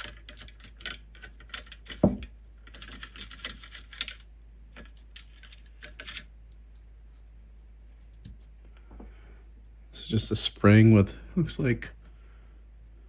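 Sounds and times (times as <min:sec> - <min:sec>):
parts scraping: 0:00.0 - 0:06.3
plastic parts clicking and rattling: 0:00.0 - 0:06.3.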